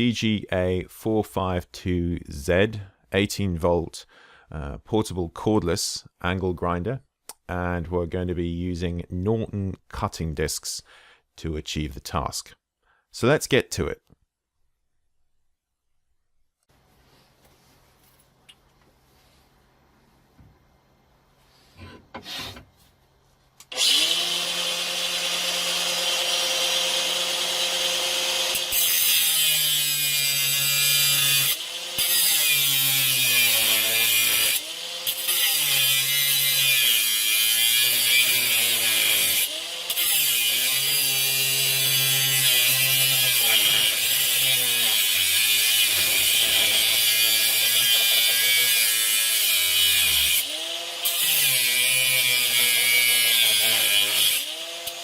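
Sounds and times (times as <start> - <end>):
angle grinder cutting steel chain: 23.6 - 55.0.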